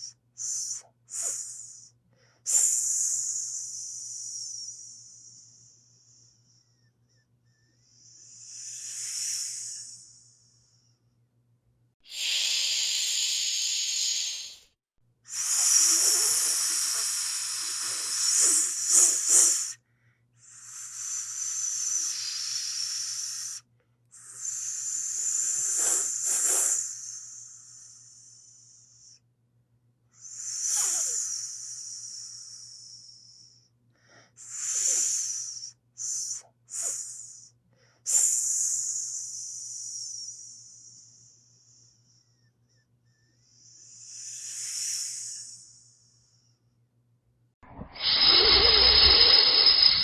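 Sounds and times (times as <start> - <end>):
snake hissing: 0.0 - 1.9, 2.5 - 6.3, 7.9 - 10.3, 12.0 - 19.8, 20.5 - 23.6, 24.3 - 28.4, 30.3 - 33.4, 34.4 - 37.5, 43.6 - 45.9, 47.8 - 50.0.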